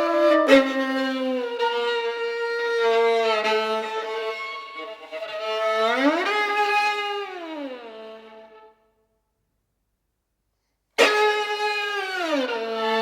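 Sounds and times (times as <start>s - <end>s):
bowed violin held notes: 0.0s - 8.7s.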